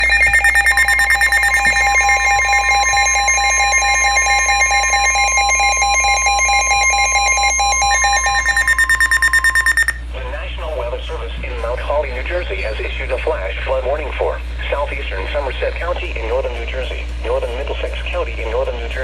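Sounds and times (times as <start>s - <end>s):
pulsing warbling electronic alert: 0.0s - 10.0s
steady warning alarm tone: 0.0s - 10.0s.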